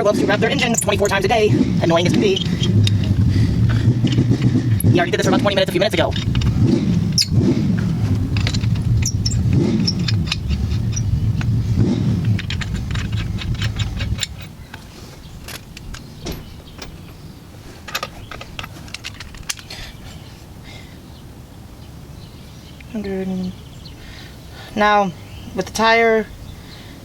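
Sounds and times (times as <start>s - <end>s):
car engine revving: 0.0s - 17.2s.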